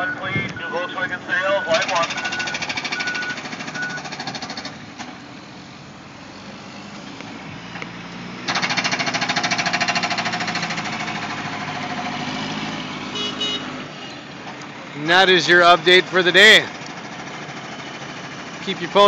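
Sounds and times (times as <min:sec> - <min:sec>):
construction machinery hammering: 0:01.7 - 0:04.8, 0:08.4 - 0:12.3.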